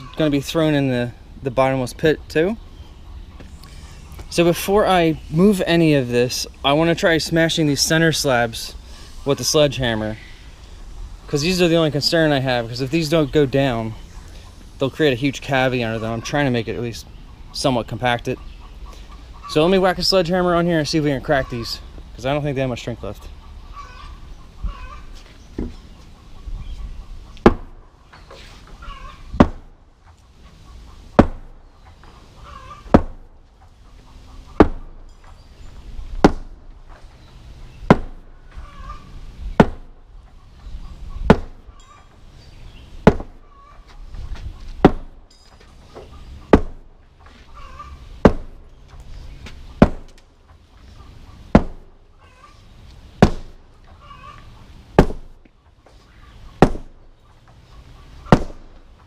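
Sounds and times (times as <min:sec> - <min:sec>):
sledgehammer striking concrete: 0:29.4 - 0:29.7, 0:31.2 - 0:31.5, 0:32.9 - 0:33.2, 0:34.6 - 0:34.9, 0:36.2 - 0:36.5, 0:37.9 - 0:38.2, 0:39.6 - 0:39.9, 0:41.3 - 0:41.6, 0:43.0 - 0:43.4, 0:44.8 - 0:45.2, 0:46.5 - 0:46.9, 0:48.2 - 0:48.5, 0:49.8 - 0:50.1, 0:51.5 - 0:51.9, 0:53.2 - 0:53.6, 0:55.0 - 0:55.3, 0:56.6 - 0:57.0, 0:58.3 - 0:58.7.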